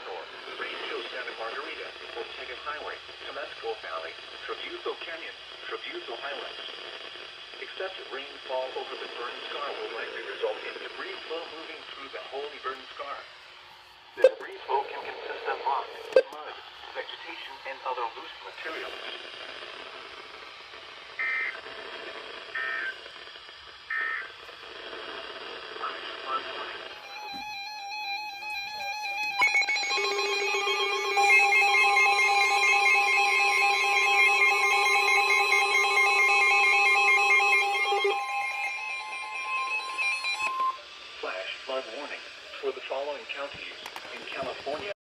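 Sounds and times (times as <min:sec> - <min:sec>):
radio static: 0:00.0 - 0:13.3, 0:14.2 - 0:27.6, 0:28.4 - 0:45.0
shrill electronic alarm: 0:26.9 - 0:40.8
steady warning tone: 0:26.9 - 0:40.9.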